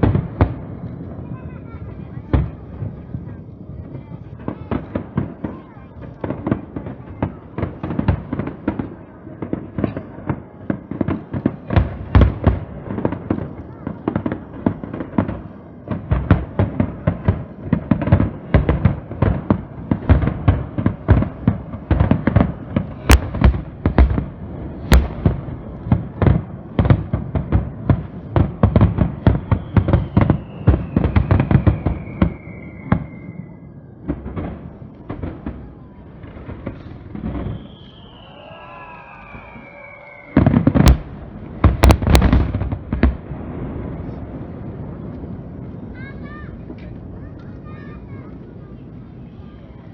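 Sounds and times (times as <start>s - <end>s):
fireworks booming and banging: 0.0s - 49.9s
falling firework whistle: 28.7s - 34.2s, 36.7s - 43.1s.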